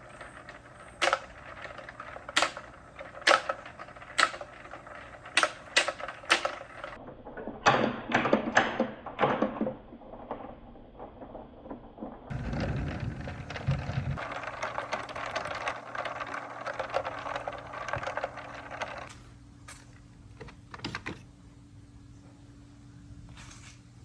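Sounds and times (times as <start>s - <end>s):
marbles clattering on wooden track: 0.0s - 7.0s, 7.9s - 19.9s.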